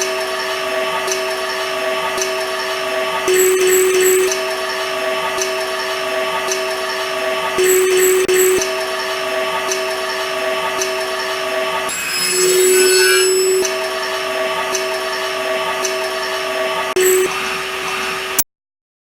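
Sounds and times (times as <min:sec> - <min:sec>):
table saw cutting wood: 0:11.9 - 0:14.2.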